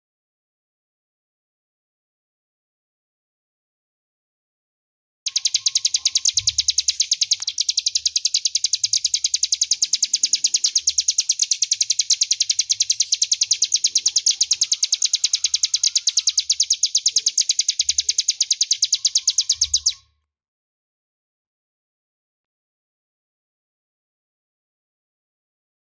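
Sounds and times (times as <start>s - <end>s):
bird singing sharp high chirps: 5.3s - 20.2s.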